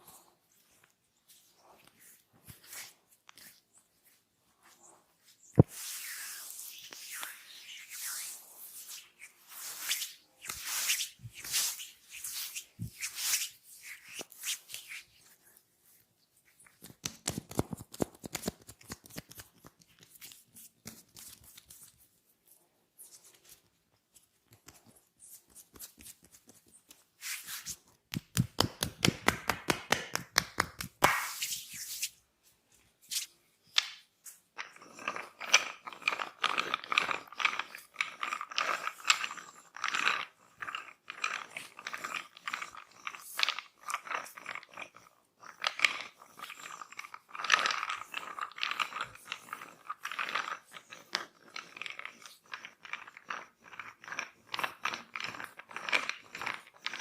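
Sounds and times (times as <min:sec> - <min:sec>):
hands slapping skin: 0:28.1 - 0:32.1.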